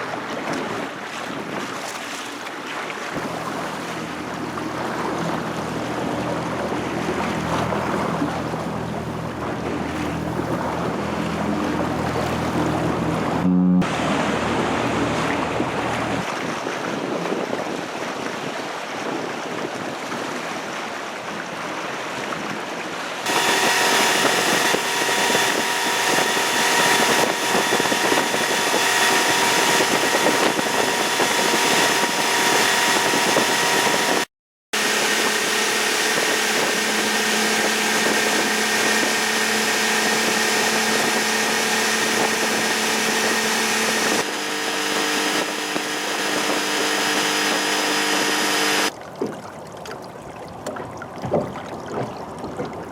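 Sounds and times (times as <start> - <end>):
water noise: 0.0 - 52.9
wind: 0.0 - 52.9
ship machinery drone with whining: 3.1 - 16.3, 23.2 - 48.9.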